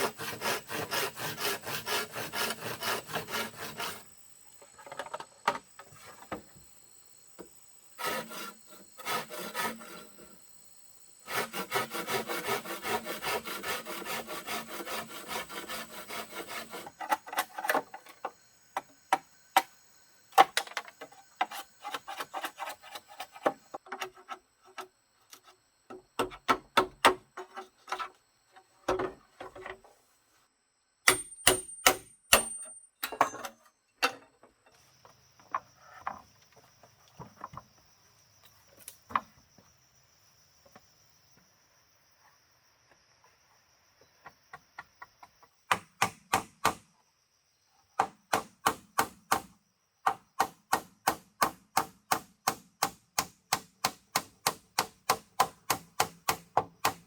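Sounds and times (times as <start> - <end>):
hand tool scraping wood: 0.0 - 4.2, 8.0 - 10.4, 11.2 - 18.1, 20.8 - 25.6
sharp knocks on wood: 45.7 - 46.8.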